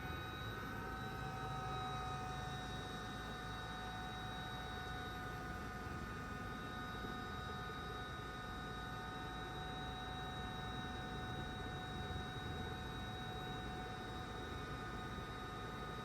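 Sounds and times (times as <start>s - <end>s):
helicopter drone: 0.0s - 16.0s.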